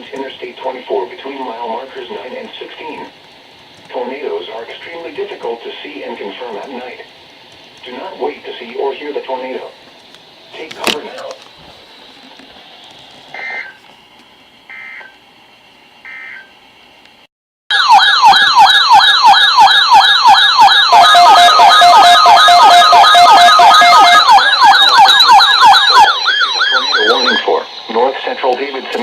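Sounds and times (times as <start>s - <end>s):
warbling siren alarm: 13.4s - 13.8s, 14.7s - 15.2s, 16.0s - 16.5s, 17.7s - 28.3s
data burst tones: 20.9s - 29.0s
steady tone: 21.1s - 29.0s.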